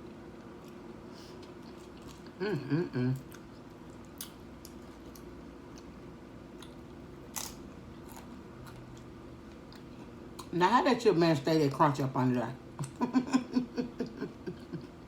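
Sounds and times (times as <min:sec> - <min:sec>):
chewing crunchy chips: 0:01.4 - 0:02.4, 0:03.2 - 0:10.5
woman humming: 0:02.3 - 0:03.3.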